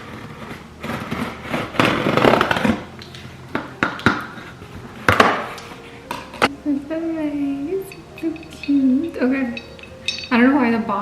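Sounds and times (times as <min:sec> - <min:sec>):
cardboard rustling and scraping: 0:00.0 - 0:03.4.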